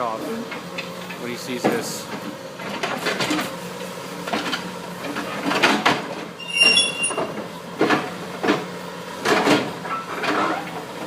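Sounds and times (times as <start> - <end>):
high squeal of bending steel: 6.4 - 7.4
metal knocking and scraping: 6.4 - 7.4.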